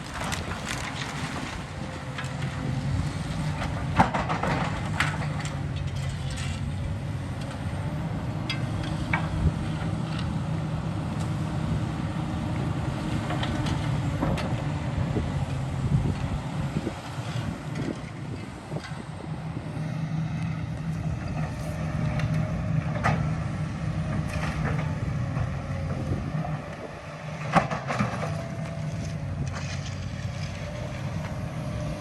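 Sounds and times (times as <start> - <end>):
debris cracking and clattering: 0.0 - 2.3
diesel engine running: 0.0 - 32.0.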